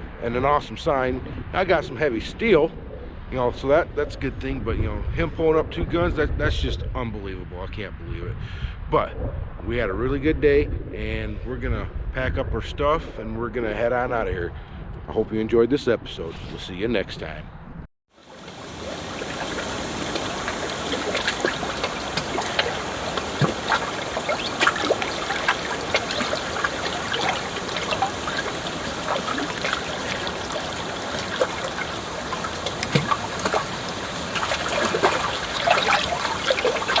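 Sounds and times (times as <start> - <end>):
river water babbling: 18.2 - 37.0.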